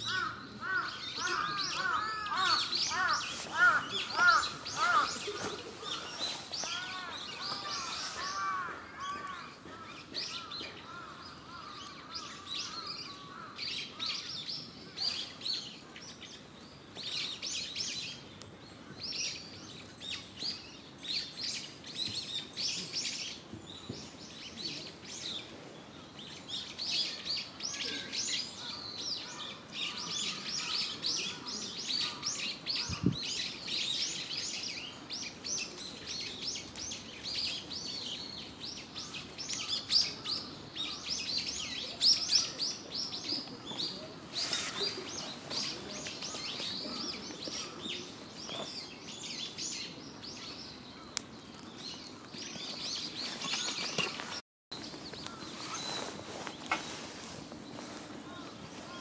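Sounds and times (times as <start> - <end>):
small birds chirping: 0.0 - 59.0
crow cawing: 0.1 - 5.2, 6.6 - 13.6.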